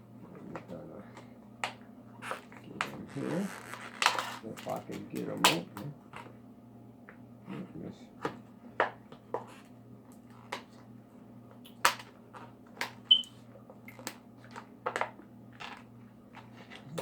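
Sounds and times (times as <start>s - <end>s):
plastic packaging clicking and crackling: 1.6s - 5.9s.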